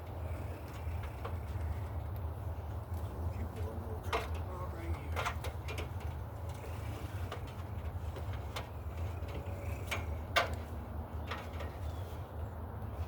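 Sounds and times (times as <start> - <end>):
cable scraping and tapping: 4.0 - 12.2.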